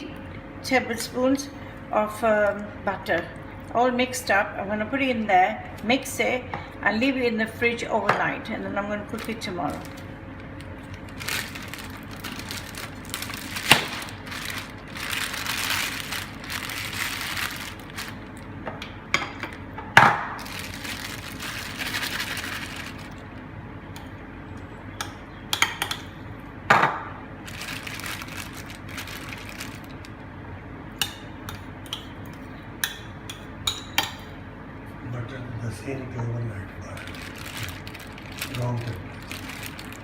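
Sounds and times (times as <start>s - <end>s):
rustling: 10.8s - 18.4s, 20.4s - 23.2s, 37.0s - 40.0s.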